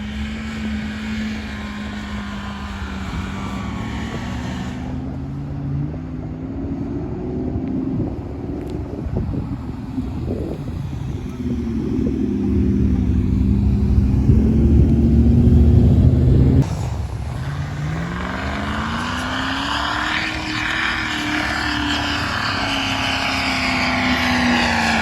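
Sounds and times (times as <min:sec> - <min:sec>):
rushing noise: 0:00.0 - 0:05.7, 0:09.5 - 0:25.0
engine running hard: 0:00.0 - 0:25.0.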